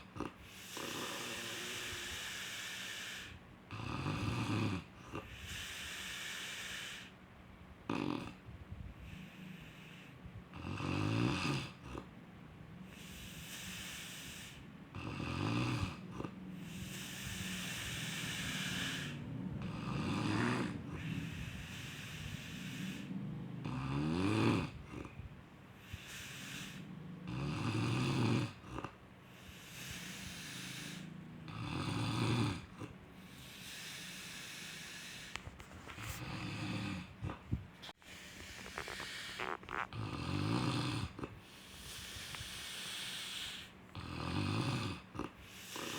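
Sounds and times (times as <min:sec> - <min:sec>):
rattling snore: 0:00.0 - 0:07.1, 0:10.5 - 0:12.1, 0:12.8 - 0:45.9
breathy hiss on out-breath: 0:00.5 - 0:03.4, 0:05.3 - 0:07.1, 0:12.9 - 0:14.7, 0:16.6 - 0:19.2, 0:25.8 - 0:26.9, 0:29.3 - 0:31.1, 0:33.2 - 0:35.4, 0:41.4 - 0:43.8, 0:45.4 - 0:45.9.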